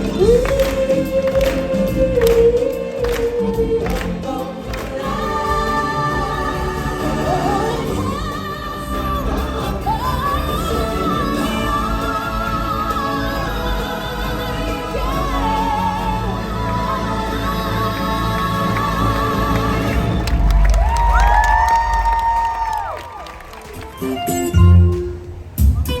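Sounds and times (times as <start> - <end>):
hands clapping on the beat: 0.0 - 6.1, 19.5 - 24.5
singers over a band: 0.0 - 22.8.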